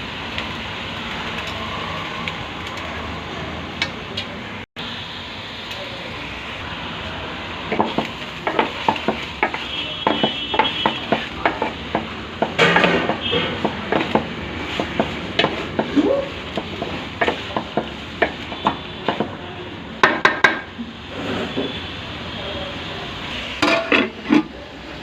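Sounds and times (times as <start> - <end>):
food sizzling: 0.0 - 25.0
metal utensil scraping pan: 7.7 - 16.0, 23.5 - 24.6.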